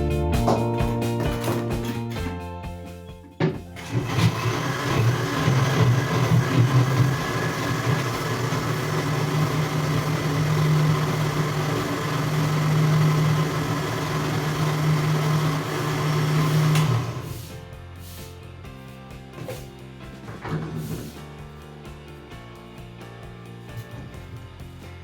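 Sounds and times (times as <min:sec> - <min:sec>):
kitchen blender running: 0:03.8 - 0:17.5.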